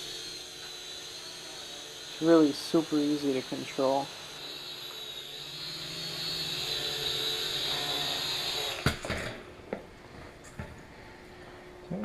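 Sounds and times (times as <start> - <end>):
quadcopter propellers whirring: 0.0 - 9.1.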